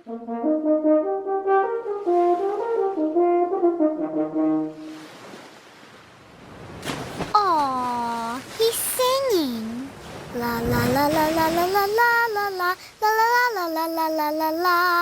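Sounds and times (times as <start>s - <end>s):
french horn melody: 0.0s - 5.0s.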